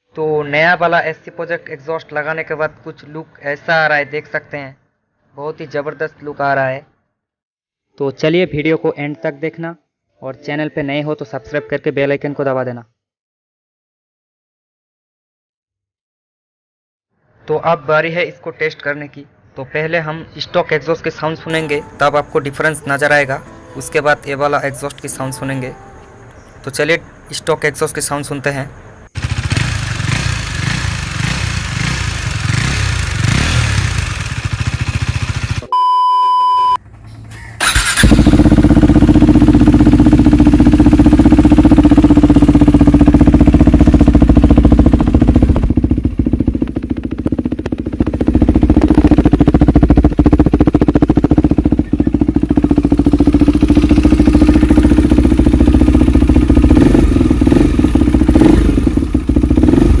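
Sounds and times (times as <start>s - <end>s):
motorcycle engine exhaust: 29.2s - 35.7s, 36.8s - 60.0s
electronic beep: 35.7s - 36.8s.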